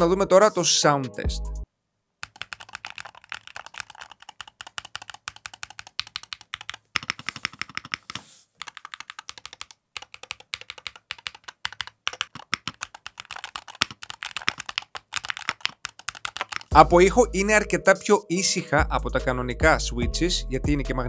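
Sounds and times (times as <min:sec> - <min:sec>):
keyboard typing clicks: 0:02.2 - 0:16.7.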